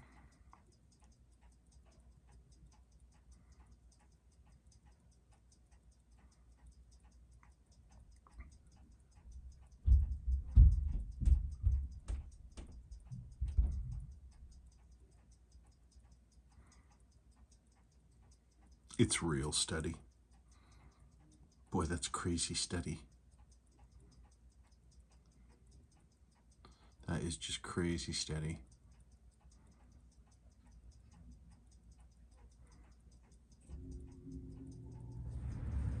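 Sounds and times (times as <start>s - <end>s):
watch ticking: 0.0s - 36.0s
low knocks and thumps: 9.8s - 14.1s.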